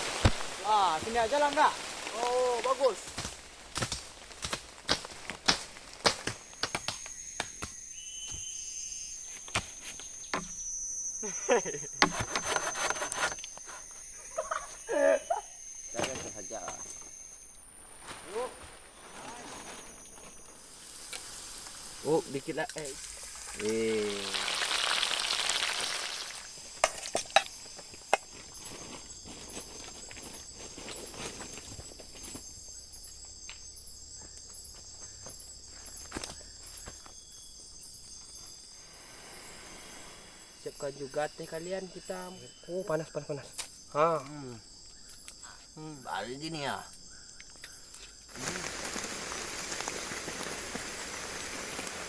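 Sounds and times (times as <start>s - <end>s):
food sizzling in a pan: 0.0s - 5.4s, 20.6s - 28.2s, 48.2s - 52.0s
footsteps in leaf litter: 0.0s - 6.6s, 17.9s - 22.6s, 27.5s - 32.2s, 48.3s - 52.0s
insect drone: 0.0s - 52.0s.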